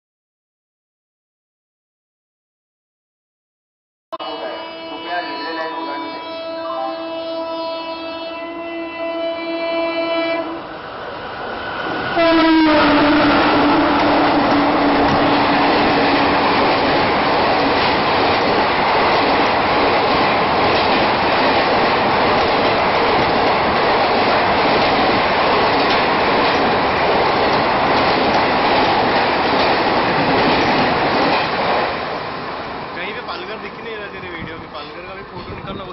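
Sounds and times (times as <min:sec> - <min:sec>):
locomotive horn blast: 0:04.2 - 0:10.6, 0:12.2 - 0:16.4
train coaches rushing past: 0:10.4 - 0:35.9.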